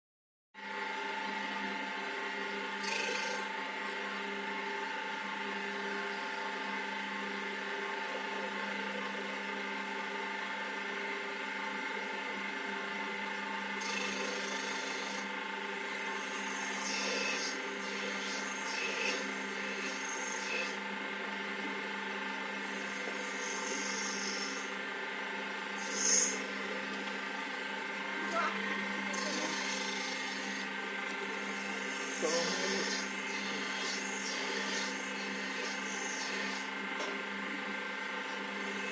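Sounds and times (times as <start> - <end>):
wood lathe motor whine: 0.6 - 38.9
turning tool scraping wood: 28.2 - 36.7.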